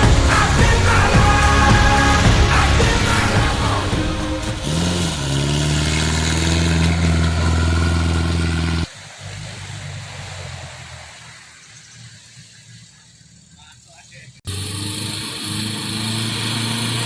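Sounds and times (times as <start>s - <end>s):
low engine rumble: 0.0s - 9.2s
jeep engine at high revs: 0.0s - 12.5s, 14.5s - 17.0s.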